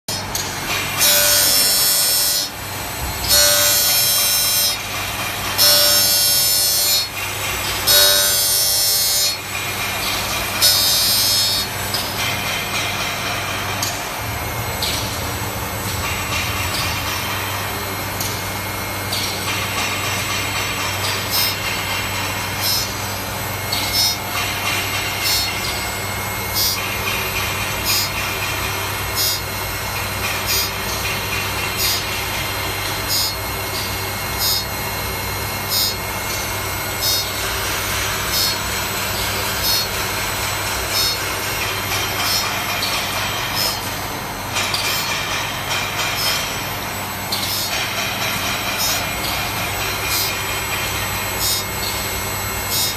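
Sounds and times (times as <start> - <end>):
grinding wheel grinding blade: 0.1 - 52.9
machine humming: 0.1 - 52.9.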